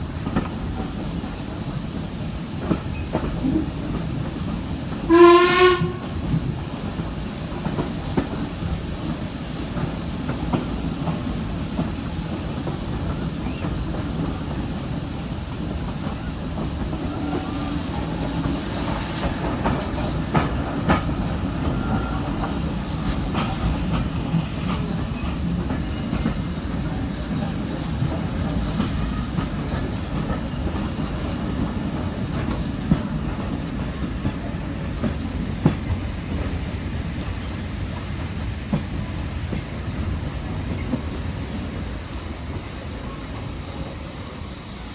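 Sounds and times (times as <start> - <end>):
steam train rumbling: 0.0 - 44.9
train whistle blast: 5.1 - 6.3.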